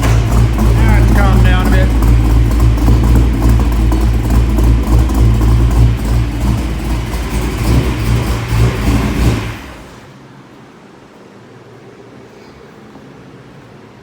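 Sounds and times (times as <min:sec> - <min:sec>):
car engine deep rumble: 0:00.0 - 0:10.2.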